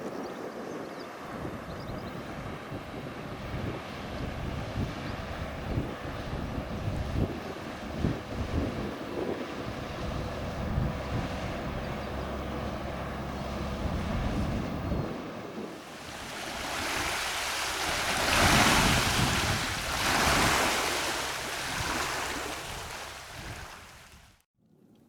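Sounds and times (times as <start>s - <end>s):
rushing wind and water: 0.0s - 24.5s
ship engine drone: 7.8s - 23.3s.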